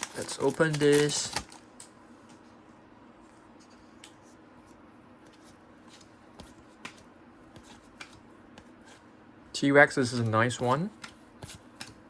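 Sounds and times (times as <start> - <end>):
card pack rustling: 0.0 - 1.7.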